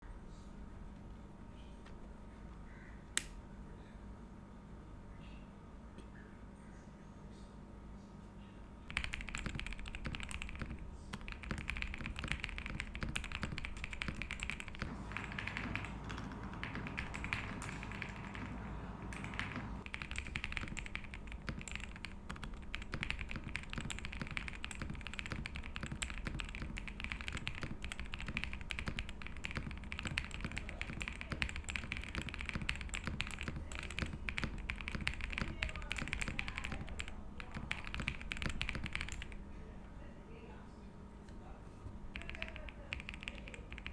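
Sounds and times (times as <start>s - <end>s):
fast mechanical keyboard typing: 8.9s - 39.4s, 42.1s - 43.9s.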